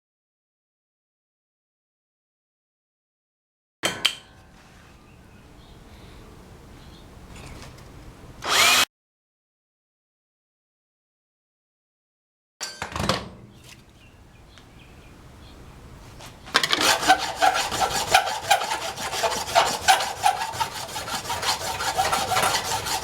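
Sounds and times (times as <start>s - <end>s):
abrasive rasping on plastic: 16.4s - 23.0s.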